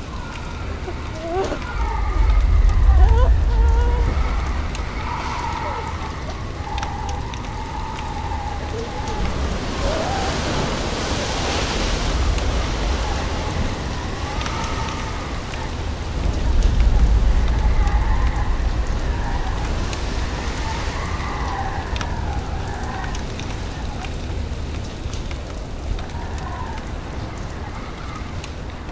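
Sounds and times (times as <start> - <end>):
deep rumble: 0.0 - 9.6, 11.8 - 27.6
dense rain noise: 0.0 - 28.9.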